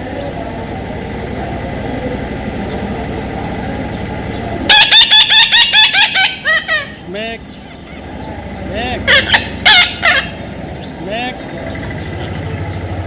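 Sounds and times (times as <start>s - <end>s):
low background rumble: 0.0s - 13.0s
parrot shrill calls: 4.7s - 7.0s, 9.1s - 10.4s.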